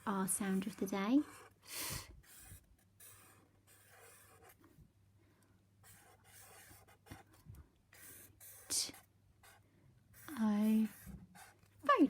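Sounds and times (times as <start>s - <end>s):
pen scratching while writing: 0.0s - 4.8s, 5.8s - 12.0s.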